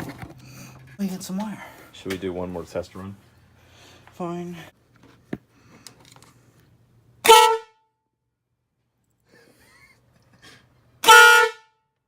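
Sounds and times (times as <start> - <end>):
air horn blast: 7.2 - 7.9, 11.0 - 11.8.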